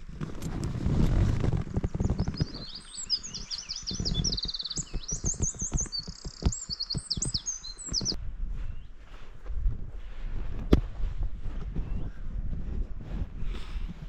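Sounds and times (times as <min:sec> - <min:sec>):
low rumbling: 0:00.0 - 0:14.0
songbird singing trills: 0:01.8 - 0:08.9.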